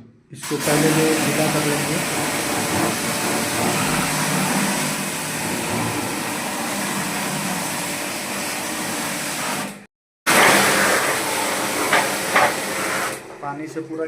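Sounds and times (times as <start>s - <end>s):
water spray hissing: 0.4s - 8.8s
pressure washer running: 0.4s - 13.9s.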